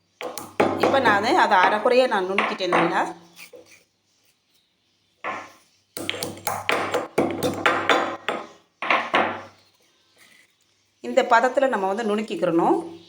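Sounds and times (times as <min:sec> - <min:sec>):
pestle pounding peppercorns in mortar: 0:00.2 - 0:03.1, 0:05.3 - 0:09.5.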